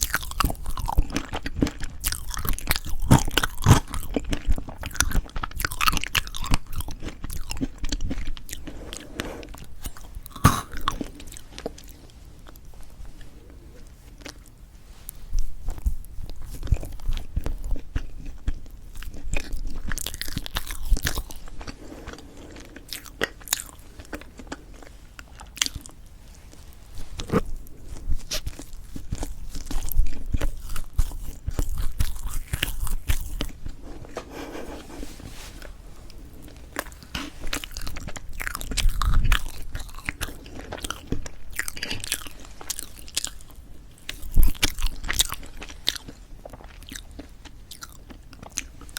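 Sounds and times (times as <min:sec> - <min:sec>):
soft chewing: 0:00.0 - 0:48.9
wet mouth clicks: 0:10.4 - 0:11.0.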